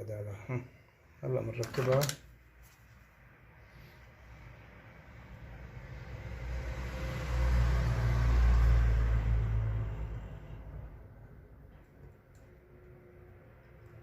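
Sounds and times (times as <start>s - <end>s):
vehicle passing by: 3.4s - 14.0s.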